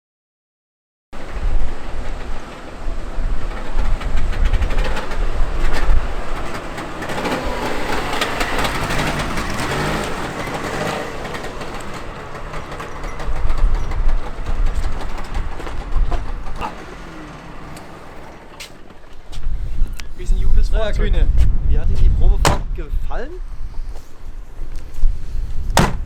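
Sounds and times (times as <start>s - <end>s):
two-stroke car engine running: 1.2s - 19.9s
road and vehicle noise: 1.2s - 26.0s.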